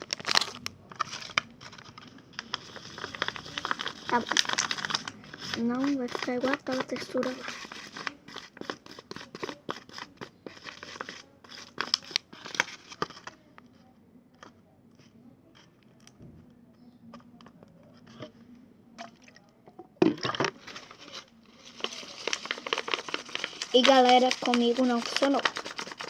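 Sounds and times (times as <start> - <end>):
slime crackling in plastic pot: 0.0 - 13.5, 19.0 - 26.0.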